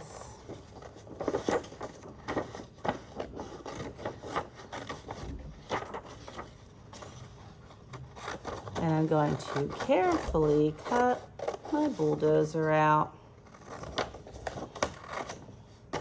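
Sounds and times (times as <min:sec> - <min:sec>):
scissors snipping paper: 0:08.1 - 0:12.4, 0:13.5 - 0:15.4.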